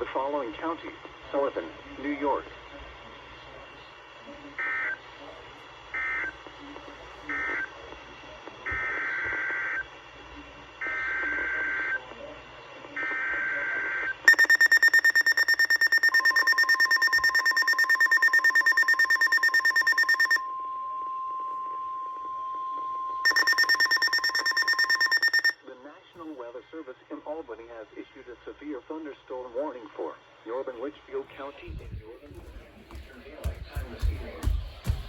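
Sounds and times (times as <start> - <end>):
rapid alarm beeping: 14.3 - 20.6, 23.2 - 25.6
steady low warning tone: 14.3 - 25.6.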